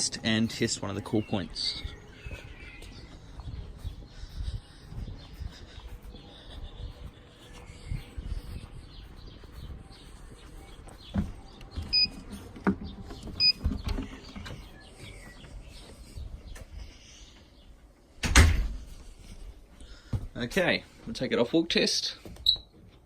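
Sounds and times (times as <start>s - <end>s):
short electronic beeps: 11.9s - 12.1s.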